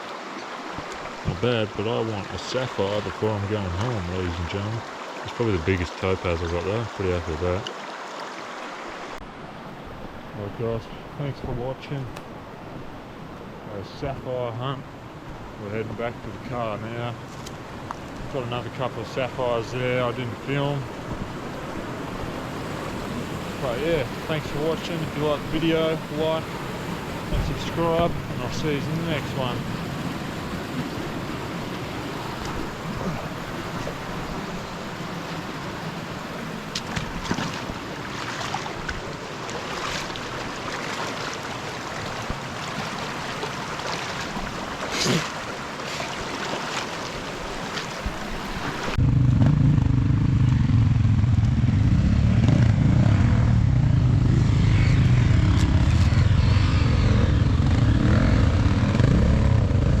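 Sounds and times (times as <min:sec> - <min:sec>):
river water rushing: 0:00.0 - 0:11.2, 0:12.2 - 0:49.0
wind: 0:00.0 - 1:00.0
vehicle engine droning: 0:49.0 - 1:00.0.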